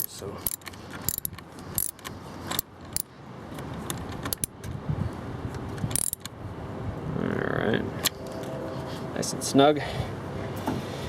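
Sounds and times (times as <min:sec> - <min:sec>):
wrench clinking on battery terminal: 0:00.0 - 0:03.1, 0:05.9 - 0:06.3.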